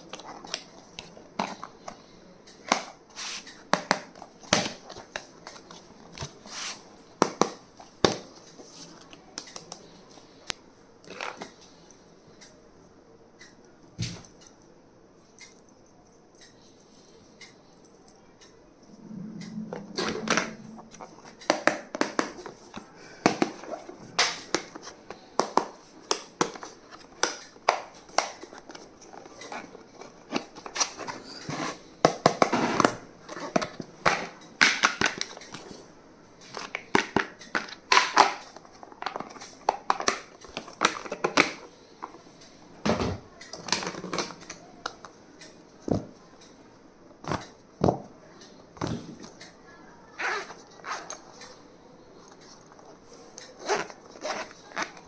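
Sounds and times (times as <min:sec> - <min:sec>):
stationery packaging clicks and crinkles: 0:00.0 - 0:11.8, 0:21.4 - 0:35.8, 0:36.4 - 0:42.5, 0:52.2 - 0:55.0.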